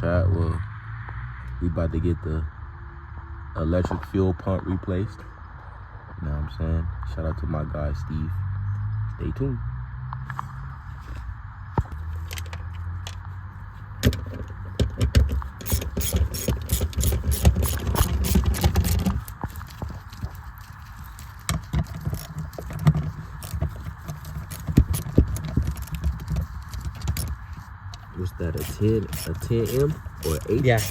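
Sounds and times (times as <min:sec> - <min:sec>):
metal hand tools clattering: 0:14.0 - 0:30.9.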